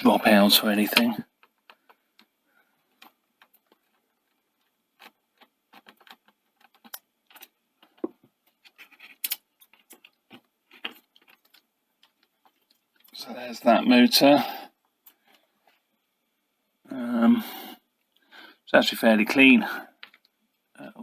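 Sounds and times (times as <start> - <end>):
small parts clicking and tapping: 0.9 - 13.2, 20.0 - 20.6.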